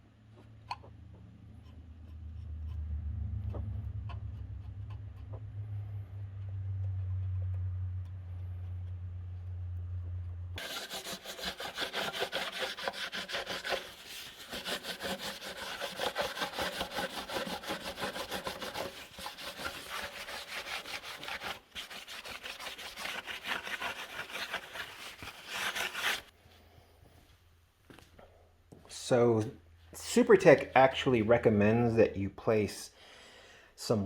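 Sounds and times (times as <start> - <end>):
file rasping on metal: 10.6 - 26.3.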